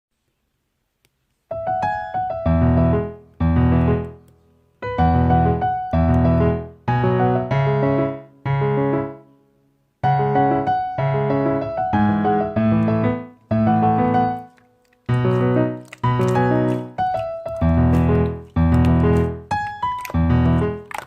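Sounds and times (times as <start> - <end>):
piano chords: 1.5 - 21.0.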